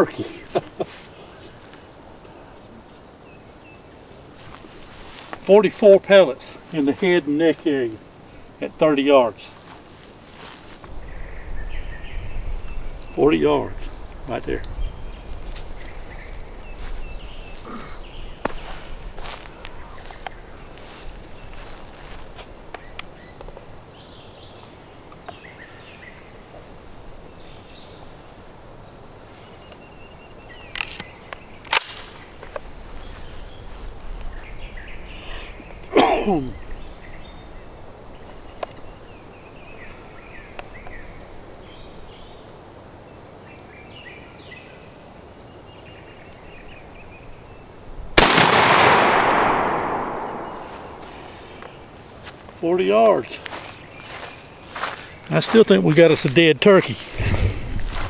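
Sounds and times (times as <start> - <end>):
small birds chirping: 0.0 - 48.3, 49.7 - 58.0
shotgun shot: 31.7 - 32.2, 48.2 - 51.4.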